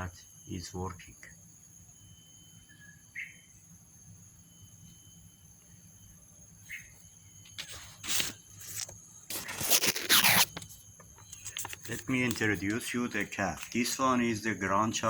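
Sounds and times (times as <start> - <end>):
high insect drone: 0.0 - 15.0
bursts of rustling: 7.6 - 10.7.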